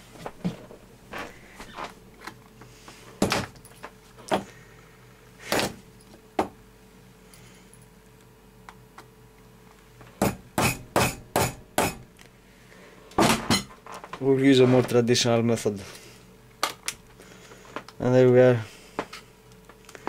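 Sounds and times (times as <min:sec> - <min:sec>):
hammer strikes: 0:10.2 - 0:12.0.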